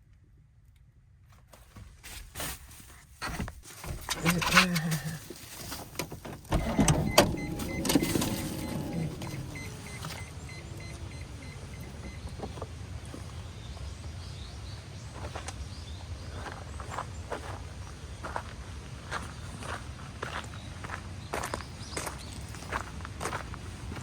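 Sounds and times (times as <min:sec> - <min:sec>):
car engine humming: 0:03.8 - 0:15.0
short electronic beeping: 0:06.7 - 0:12.3.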